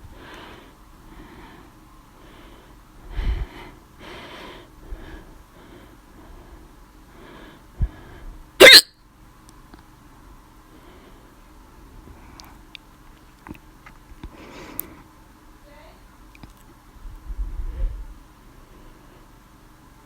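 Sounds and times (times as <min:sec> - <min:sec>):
person breathing: 0:00.1 - 0:08.4
person hiccuping: 0:08.6 - 0:08.9.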